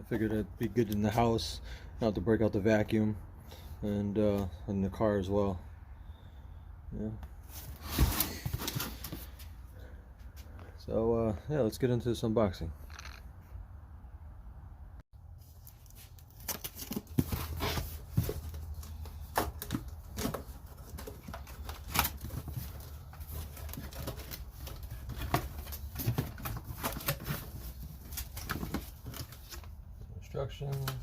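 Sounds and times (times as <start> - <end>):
cardboard packaging rustling: 7.5 - 9.6, 15.4 - 29.8.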